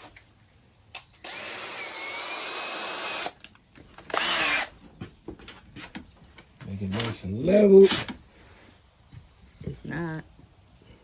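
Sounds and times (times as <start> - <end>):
power drill whine: 1.2 - 3.4, 4.1 - 4.7.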